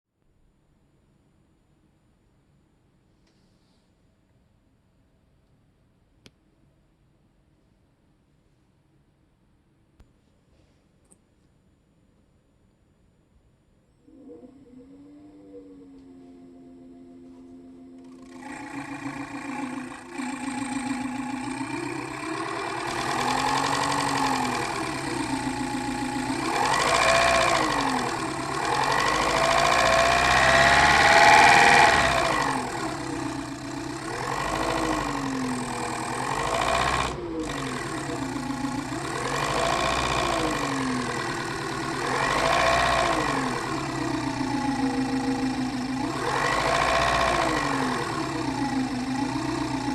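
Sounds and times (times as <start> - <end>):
fan buzzing rising and falling: 14.1 - 49.9.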